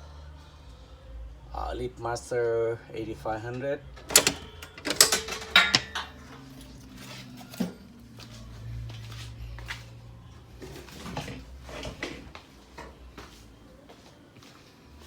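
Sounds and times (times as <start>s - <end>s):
garage door opener humming: 3.8s - 6.5s
sharp clicks and knocks: 4.0s - 6.1s.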